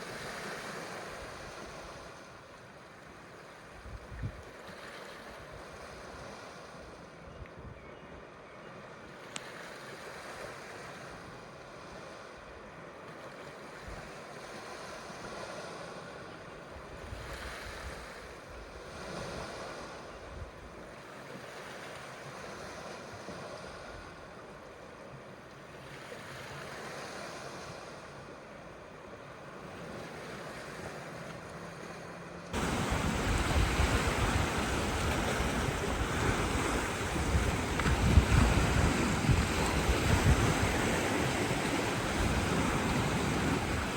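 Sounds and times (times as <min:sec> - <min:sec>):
waves washing onto shore: 0:25.8 - 0:43.9
wind rumbling on microphone: 0:32.6 - 0:43.9.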